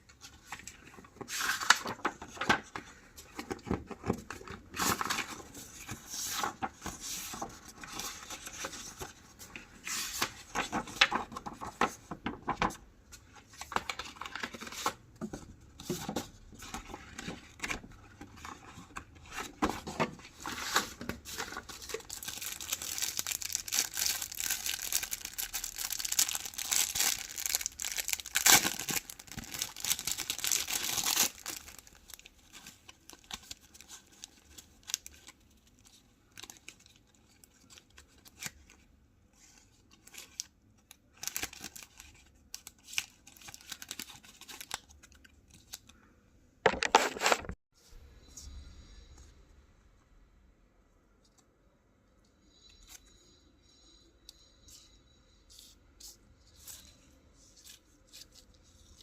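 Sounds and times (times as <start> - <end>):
paper rustling and tearing: 46.7 - 47.6.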